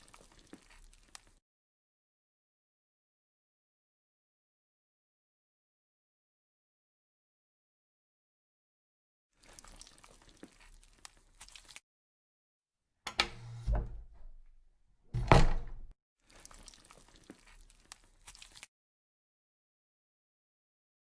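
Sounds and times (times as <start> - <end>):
door-like thud: 15.2 - 15.9.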